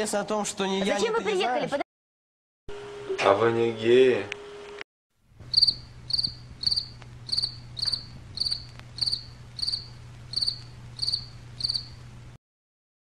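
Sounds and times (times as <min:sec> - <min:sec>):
low steady hum: 0:05.3 - 0:12.4
cricket chirping: 0:05.4 - 0:12.0.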